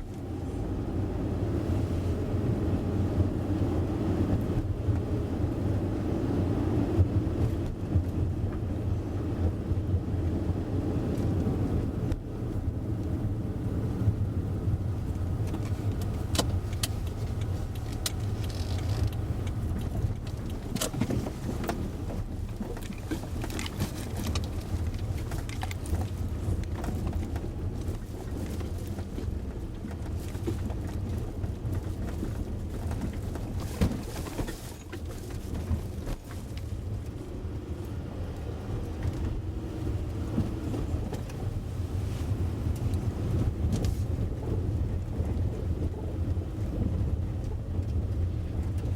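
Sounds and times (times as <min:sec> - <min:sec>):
car engine and tyre rumble: 0:00.0 - 0:48.9
sharp clicks and knocks: 0:15.2 - 0:31.1.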